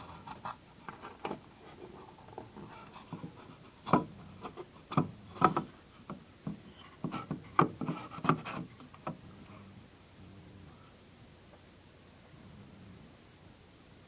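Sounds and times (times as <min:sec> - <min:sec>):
wooden plaques knocking and rubbing: 0:00.0 - 0:09.2.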